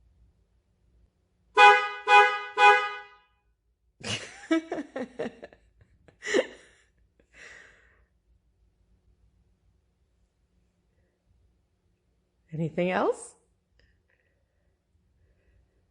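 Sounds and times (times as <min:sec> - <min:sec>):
car horn honking: 0:01.6 - 0:03.4.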